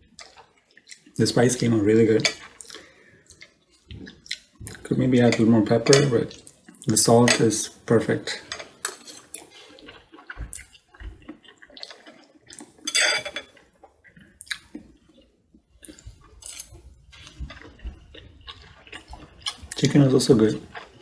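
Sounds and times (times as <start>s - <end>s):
cutlery clinking on a plate: 2.2s - 2.5s, 5.3s - 6.2s, 7.2s - 7.5s, 8.3s - 9.3s, 12.9s - 13.6s.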